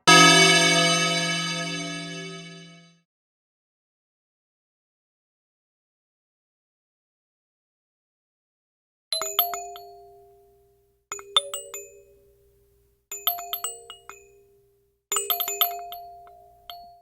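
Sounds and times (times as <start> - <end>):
jangly bell-like chime: 0.1 - 2.8, 13.2 - 17.0.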